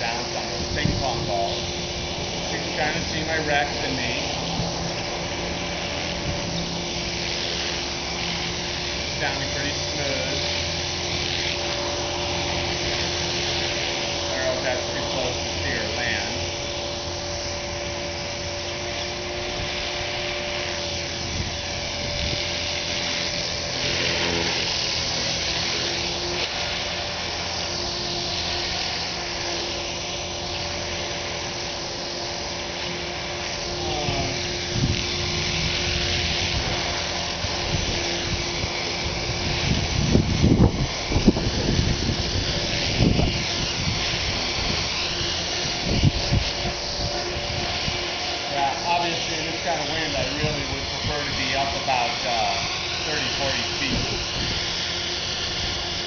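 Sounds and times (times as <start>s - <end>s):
model helicopter rotor whine: 0.0s - 56.0s
wind buffeting microphone: 0.3s - 3.9s, 34.0s - 48.1s, 48.8s - 55.9s.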